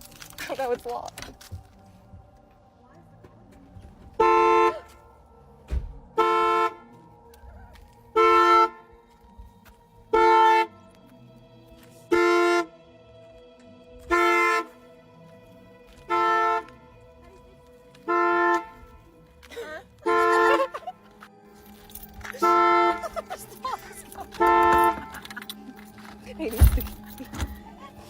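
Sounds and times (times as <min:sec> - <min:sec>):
car alarm horn blasts: 0:04.1 - 0:05.2, 0:06.1 - 0:07.0, 0:08.1 - 0:08.9, 0:10.1 - 0:10.8, 0:12.1 - 0:12.8, 0:14.1 - 0:14.8, 0:16.1 - 0:16.8, 0:18.0 - 0:19.0, 0:20.0 - 0:20.8, 0:22.3 - 0:23.4, 0:24.2 - 0:25.3.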